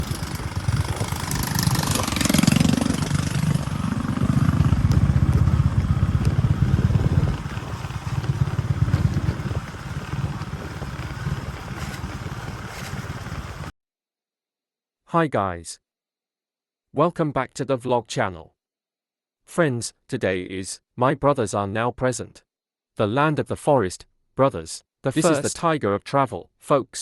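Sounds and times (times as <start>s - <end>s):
engine running: 0.0s - 13.7s.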